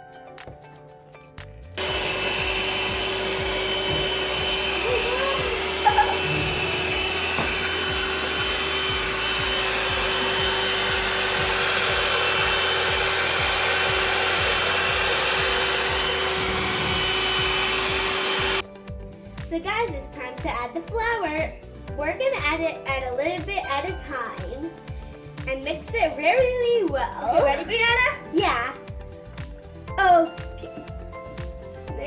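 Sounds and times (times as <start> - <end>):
electric mixer beating batter: 1.8 - 18.7.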